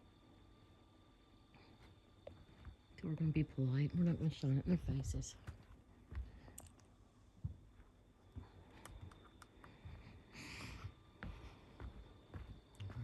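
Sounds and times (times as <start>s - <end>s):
faint clicks and taps: 8.3s - 10.0s.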